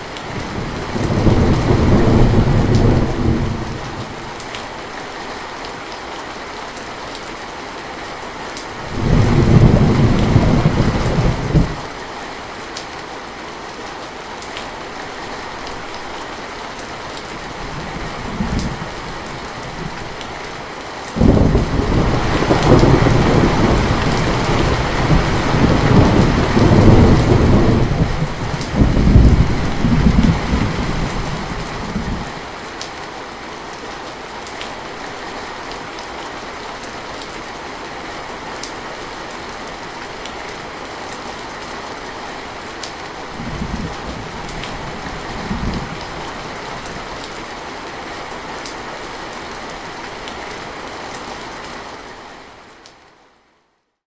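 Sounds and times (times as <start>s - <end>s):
steady rain: 0.0s - 54.0s
rolling thunder rumble: 0.4s - 4.2s, 8.9s - 11.9s, 21.2s - 32.4s, 43.4s - 46.9s.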